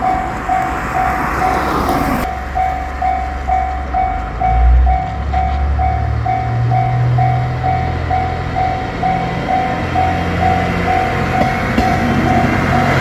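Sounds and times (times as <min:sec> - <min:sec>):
diesel railcar engine drone: 0:00.0 - 0:13.0
level crossing warning bell: 0:00.0 - 0:13.0.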